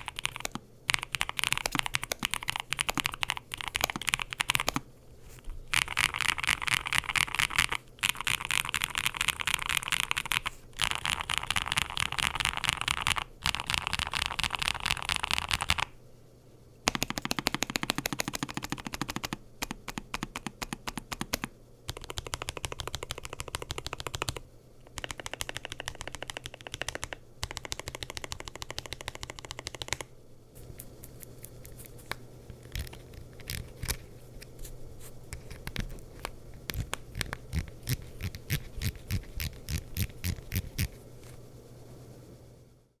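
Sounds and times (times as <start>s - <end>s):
mechanical keyboard typing: 0.0s - 4.8s, 5.7s - 15.9s, 16.9s - 30.1s, 35.4s - 40.9s.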